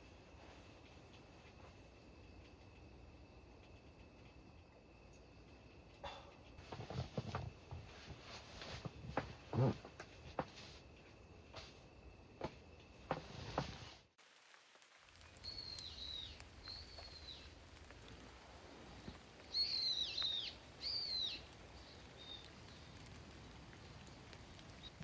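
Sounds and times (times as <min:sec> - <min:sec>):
faint outdoor hiss: 0:00.0 - 0:25.0
songbird whistling: 0:15.4 - 0:17.5, 0:19.5 - 0:22.5.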